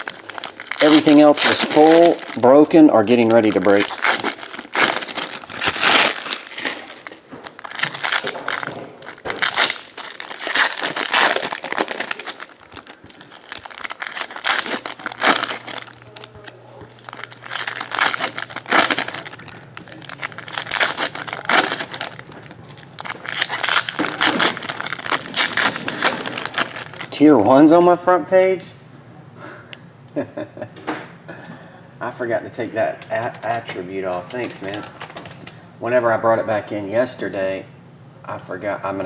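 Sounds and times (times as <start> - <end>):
card pack wrappers crinkling: 0.0 - 27.4.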